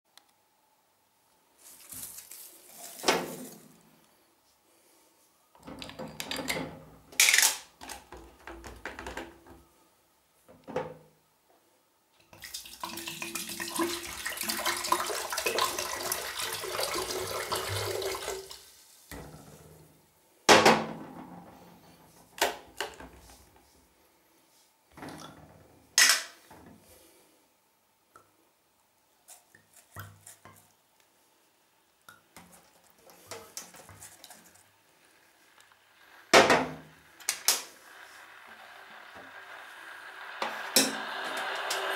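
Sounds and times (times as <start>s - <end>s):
water running: 12.4s - 19.6s, 36.0s - 41.9s.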